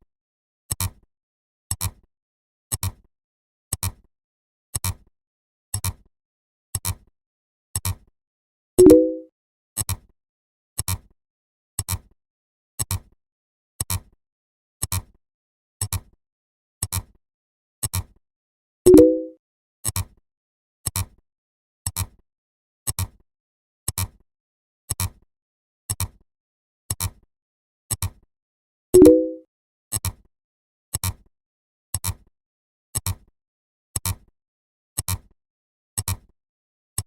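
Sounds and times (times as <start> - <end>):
low chord-like tone: 8.8 - 9.3, 18.9 - 19.4, 29.0 - 29.4
short sharp electronic click: 8.8 - 9.3, 18.9 - 19.4, 29.0 - 29.4.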